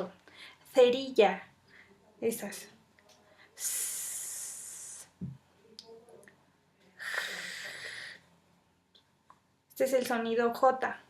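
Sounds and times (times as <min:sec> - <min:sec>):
woman making throaty hiss: 0:03.6 - 0:05.1, 0:07.0 - 0:08.2
woman making hissing sounds: 0:03.6 - 0:05.2, 0:07.0 - 0:08.2.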